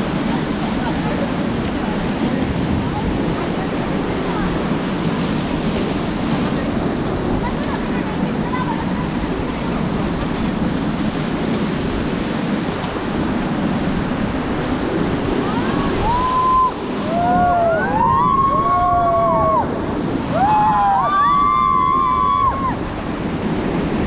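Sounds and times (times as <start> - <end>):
river rapids rushing: 0.0 - 24.0
wind buffeting microphone: 0.0 - 24.0
people whooping shouts: 16.0 - 19.7, 20.3 - 22.8.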